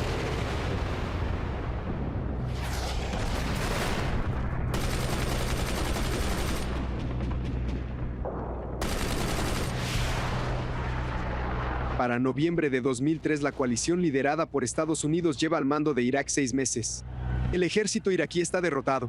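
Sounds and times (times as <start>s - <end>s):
steady low rumble: 0.0s - 18.6s
gunfire bursts: 3.3s - 7.0s, 8.8s - 10.1s.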